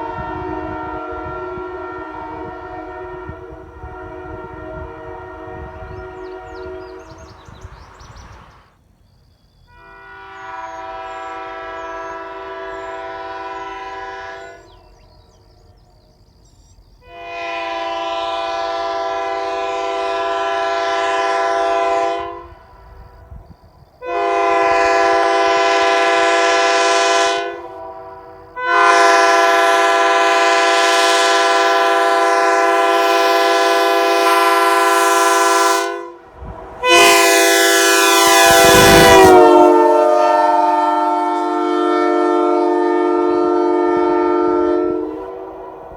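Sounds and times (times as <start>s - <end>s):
three-chime air horn blasts: 24.0s - 36.2s, 36.8s - 45.7s.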